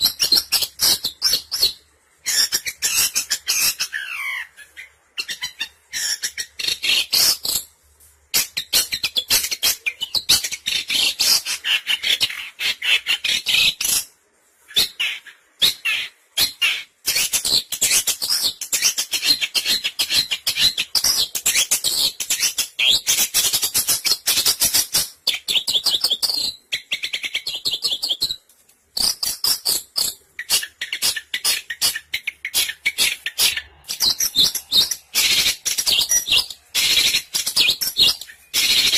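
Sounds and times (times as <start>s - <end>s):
shrike harsh chattering calls: 29.0s - 38.9s.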